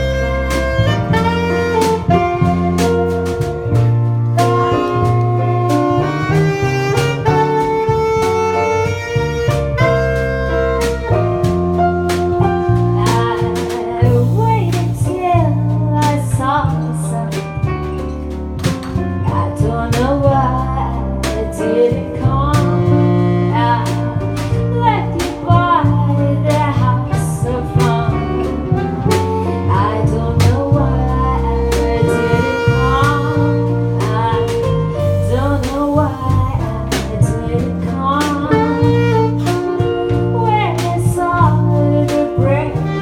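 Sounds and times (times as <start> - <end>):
drum beat: 0.0 - 16.9, 17.6 - 20.7
jazzy band accompaniment: 0.0 - 43.0
steady bass line: 0.0 - 43.0.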